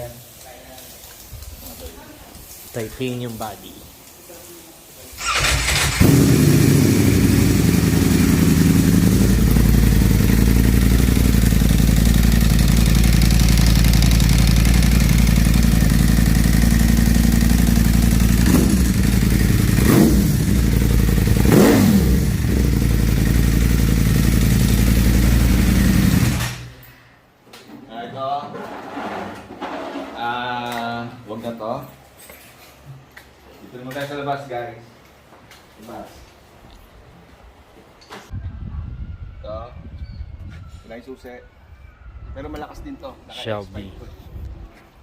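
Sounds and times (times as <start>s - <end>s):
motorcycle engine idling: 5.3s - 26.4s.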